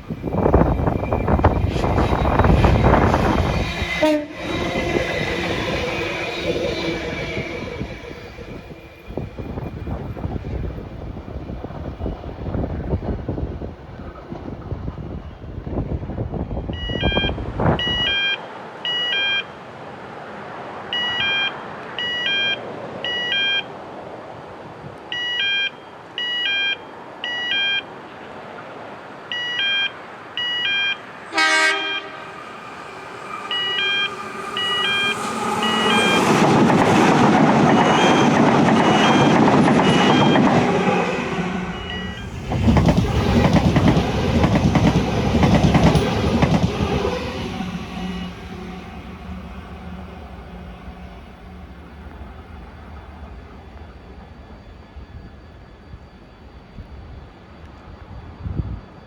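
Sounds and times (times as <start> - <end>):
train rumbling past: 0.0 - 19.0, 28.1 - 59.0
train horn blast: 1.6 - 6.2, 31.3 - 44.0
short high beeps: 31.8 - 42.4.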